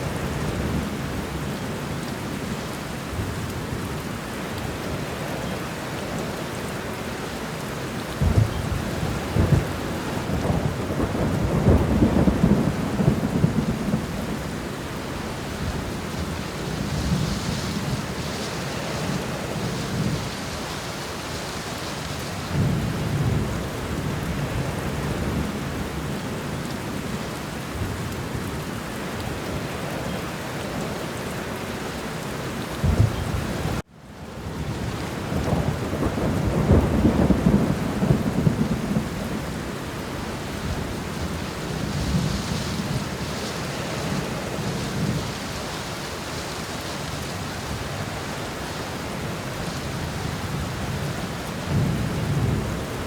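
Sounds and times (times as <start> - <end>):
heavy rain: 0.0 - 53.0
rolling thunder: 8.1 - 20.9, 32.8 - 33.8, 34.5 - 45.6, 49.7 - 53.0.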